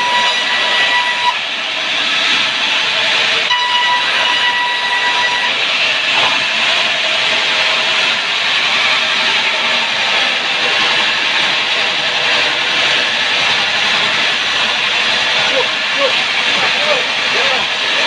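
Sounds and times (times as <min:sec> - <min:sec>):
sawmill saw cutting log: 0:00.0 - 0:18.0.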